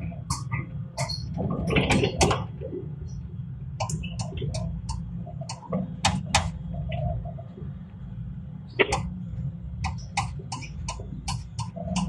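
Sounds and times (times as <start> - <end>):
excavator engine rumbling: 0.0 - 12.0.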